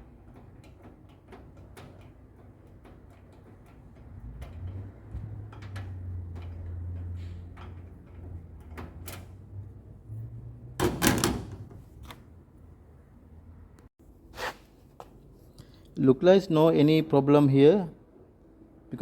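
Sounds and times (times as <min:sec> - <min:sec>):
clicks and knocks of parts: 0:00.2 - 0:09.5.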